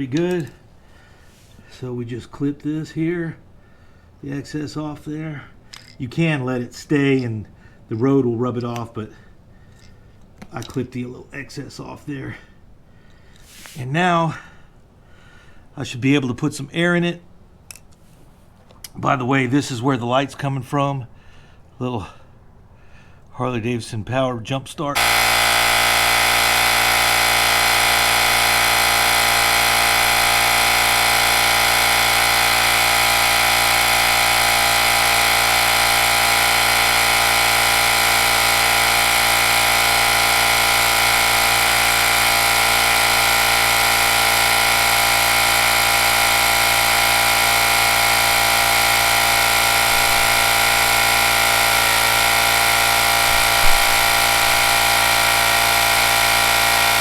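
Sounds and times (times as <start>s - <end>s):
air compressor running: 0.0s - 1.8s, 13.4s - 13.8s, 25.0s - 57.0s.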